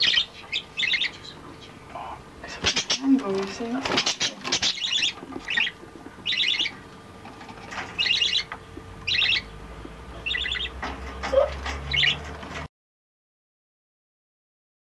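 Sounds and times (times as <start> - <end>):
budgerigars chirping: 0.0 - 6.9, 7.6 - 12.3
faint steady hum: 0.0 - 12.6.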